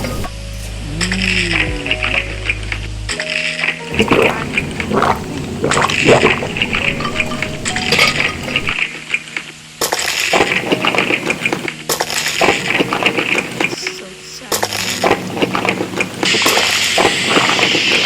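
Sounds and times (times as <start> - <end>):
faint background music: 0.0 - 18.0
dishes and cutlery clinking: 3.9 - 8.8
liquid sounds: 3.9 - 13.9, 14.5 - 18.0.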